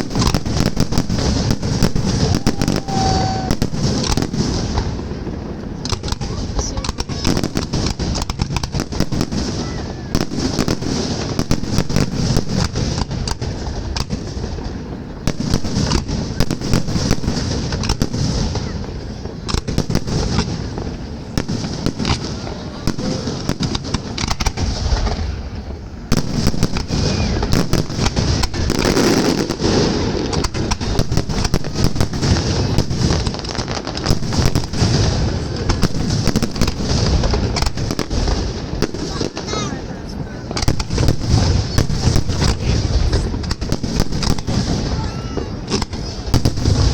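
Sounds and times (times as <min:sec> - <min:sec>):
fireworks bangs and crackling: 0:00.0 - 0:46.9
people's voices: 0:01.3 - 0:11.5, 0:17.8 - 0:31.5, 0:34.7 - 0:46.4.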